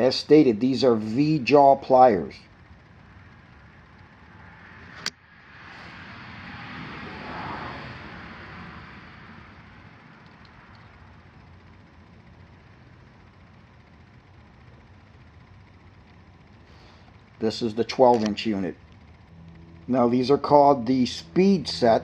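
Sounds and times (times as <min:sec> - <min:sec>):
broad rushing noise: 0:02.6 - 0:12.6
sharp click: 0:05.0 - 0:05.2
low background noise: 0:08.8 - 0:22.0.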